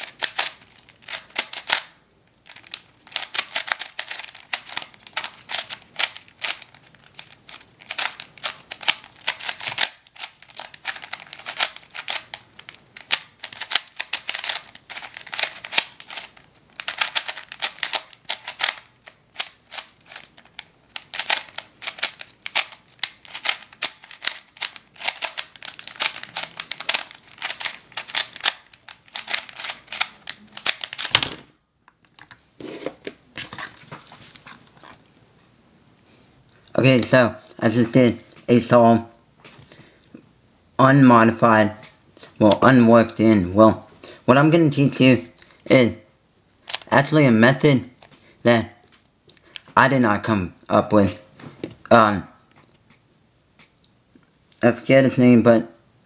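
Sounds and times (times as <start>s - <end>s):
puzzle cube plastic clicks: 0.0s - 31.4s, 46.6s - 47.0s.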